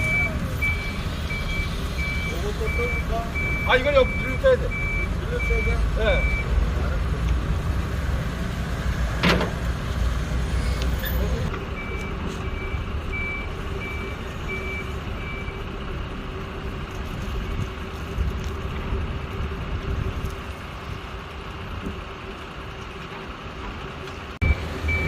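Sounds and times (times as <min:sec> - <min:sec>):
reversing alarm beeping: 0:00.0 - 0:06.6, 0:11.7 - 0:15.7, 0:24.4 - 0:25.0
vehicle engine running: 0:00.0 - 0:25.0.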